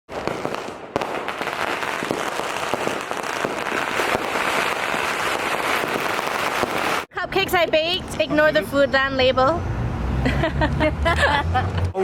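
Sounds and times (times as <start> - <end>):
firecrackers crackling: 0.1 - 7.1.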